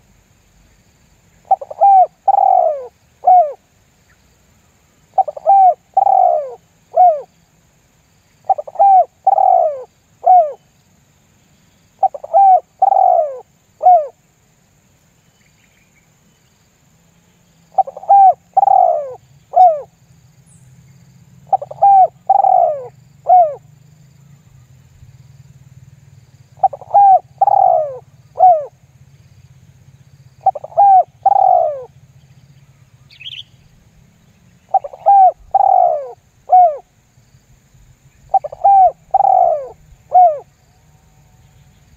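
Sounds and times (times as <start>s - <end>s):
dove cooing: 1.4s - 3.6s, 5.1s - 7.3s, 8.4s - 10.6s, 12.0s - 14.2s, 17.7s - 19.9s, 21.4s - 23.7s, 26.5s - 28.8s, 30.4s - 32.0s, 34.7s - 36.9s, 38.2s - 40.6s.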